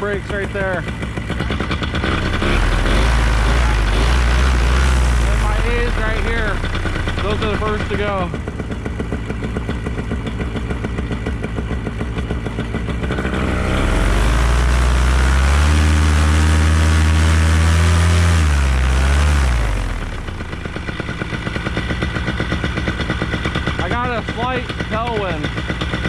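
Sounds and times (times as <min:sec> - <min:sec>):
paramotor engine revving: 0:00.0 - 0:26.0.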